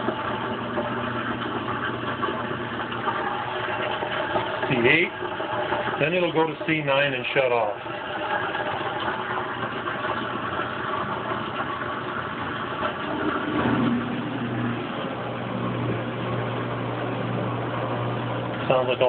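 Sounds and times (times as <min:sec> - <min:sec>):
washer drain pump running: 0:00.0 - 0:19.0
steady low hum: 0:12.3 - 0:19.0.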